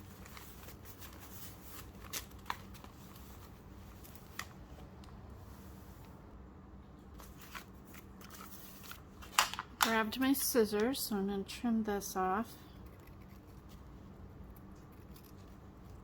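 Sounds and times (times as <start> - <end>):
paper pages shuffling: 0.0 - 4.9, 7.2 - 10.0.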